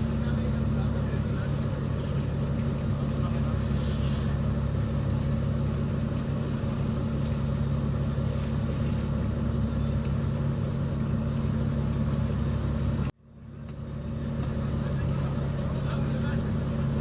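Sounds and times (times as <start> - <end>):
boat engine droning: 0.0 - 17.0.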